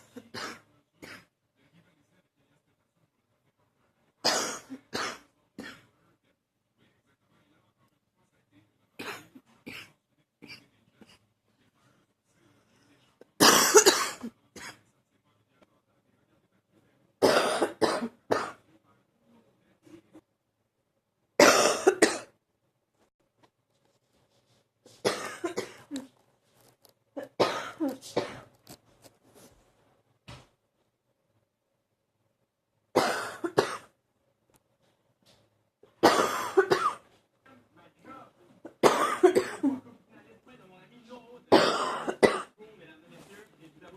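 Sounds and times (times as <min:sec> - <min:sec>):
person coughing: 0:13.4 - 0:14.8, 0:17.2 - 0:18.6, 0:21.4 - 0:22.3, 0:25.0 - 0:26.1, 0:27.2 - 0:28.5, 0:33.0 - 0:33.9, 0:36.0 - 0:37.0, 0:38.7 - 0:39.8, 0:41.5 - 0:42.6.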